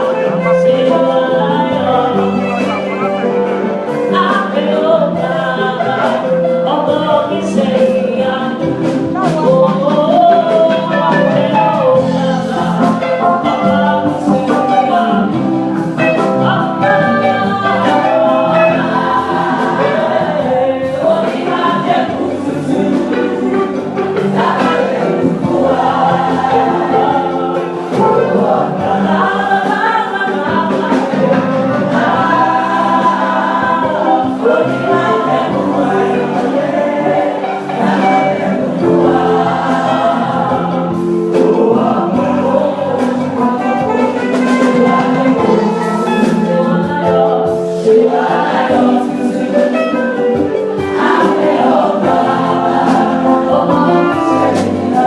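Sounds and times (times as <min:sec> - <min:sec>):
choir singing in parts: 0:00.0 - 0:55.0
steady sharp beats: 0:14.2 - 0:55.0.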